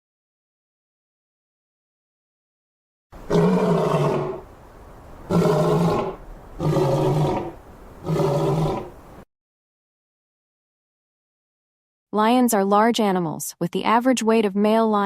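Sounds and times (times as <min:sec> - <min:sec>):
lion roaring: 0:03.2 - 0:09.2.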